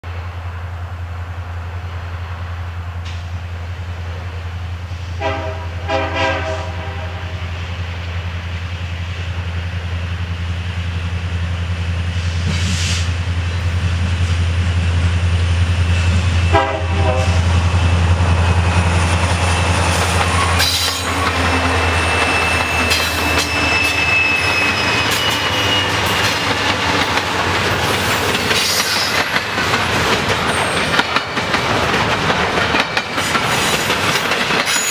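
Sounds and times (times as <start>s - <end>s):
diesel locomotive engine rumble: 0.0s - 34.9s
train air horn blasts: 5.0s - 7.6s, 16.4s - 17.5s
high-pitched wheel squeal: 19.8s - 26.4s, 34.7s - 34.9s.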